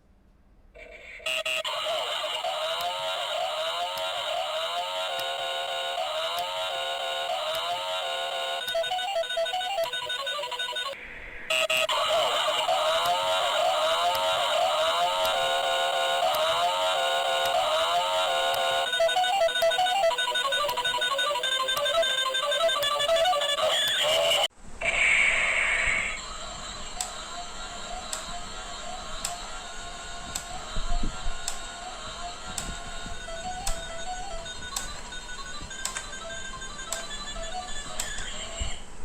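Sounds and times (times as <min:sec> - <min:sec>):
toy gun beeping patterns: 0:01.3 - 0:24.5, 0:26.0 - 0:38.8
warbling laser-like tones: 0:19.8 - 0:34.5.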